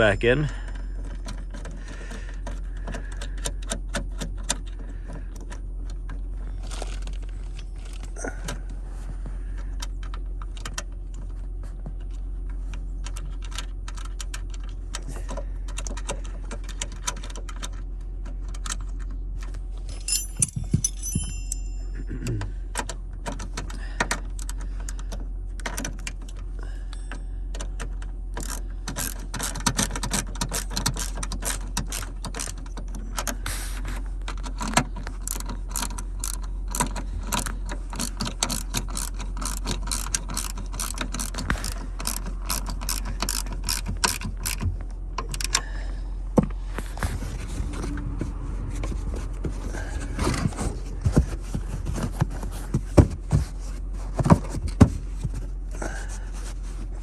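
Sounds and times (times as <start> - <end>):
ratchet wrench clicking: 28.4 - 32.7, 34.6 - 44.7.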